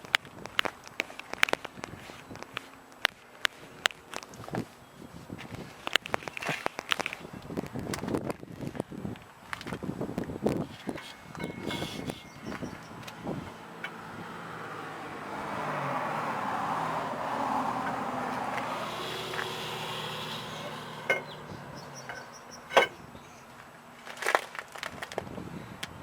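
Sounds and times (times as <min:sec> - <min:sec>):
sharp metallic clinks: 0:10.7 - 0:14.4, 0:18.6 - 0:23.4
vehicle passing by: 0:12.5 - 0:22.9.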